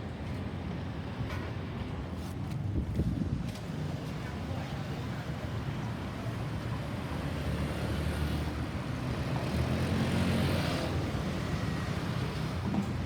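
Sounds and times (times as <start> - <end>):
vehicle engine and tyres passing: 7.0 - 13.0.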